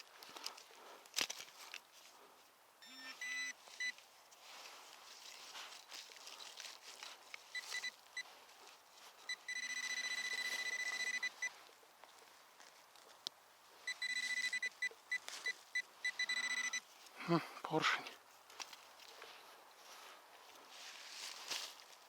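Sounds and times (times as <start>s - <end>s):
metal detector beeps: 2.8s - 4.0s, 7.5s - 8.3s, 9.3s - 11.5s, 13.9s - 16.9s.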